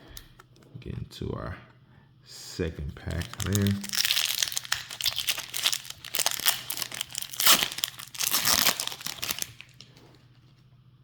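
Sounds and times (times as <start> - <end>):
foil wrapper tearing and crinkling: 3.1 - 9.9.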